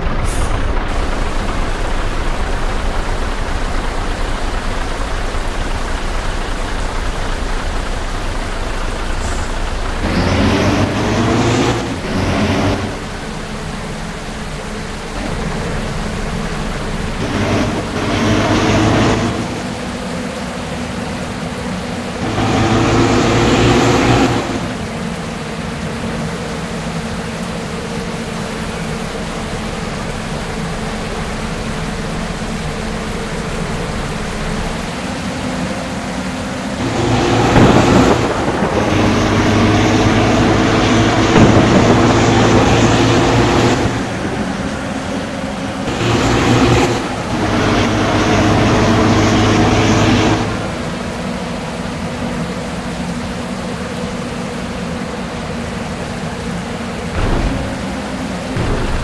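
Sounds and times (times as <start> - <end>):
diesel bus engine humming: 0.0 - 59.0.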